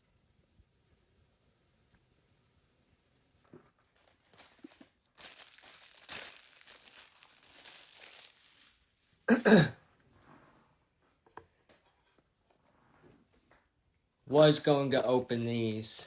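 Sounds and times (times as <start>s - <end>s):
plastic packaging crinkling: 3.7s - 9.1s
person coughing: 9.3s - 9.8s.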